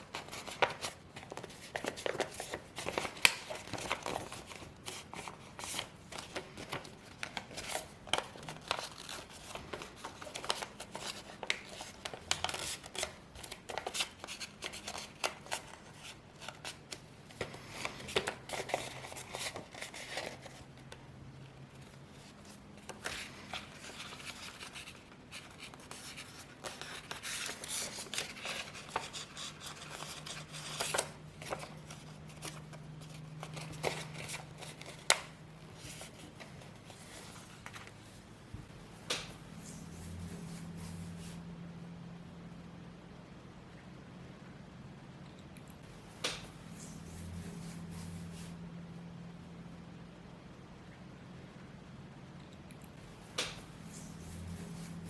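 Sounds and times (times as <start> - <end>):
paper crackling while folded: 0.0 - 21.0, 21.7 - 38.2.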